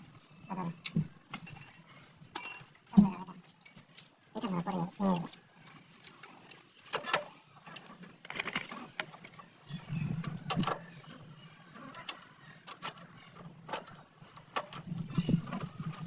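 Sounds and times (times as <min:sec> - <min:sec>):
metallic clinks and knocks: 0:01.4 - 0:03.0, 0:03.6 - 0:07.3.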